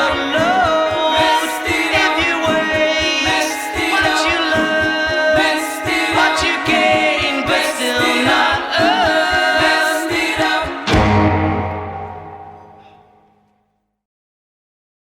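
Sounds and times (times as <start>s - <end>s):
choir-like singing: 0.0s - 13.4s
steady beat: 8.2s - 13.2s
band final chord ringing: 10.8s - 13.5s.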